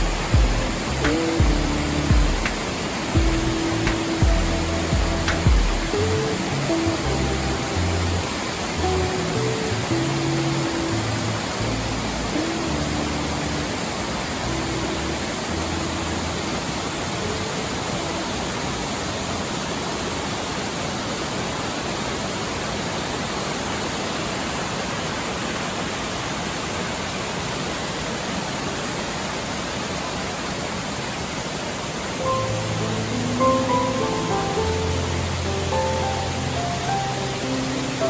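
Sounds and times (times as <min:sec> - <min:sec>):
waterfall rushing: 0:00.0 - 0:38.0
faint piano notes: 0:32.2 - 0:38.0.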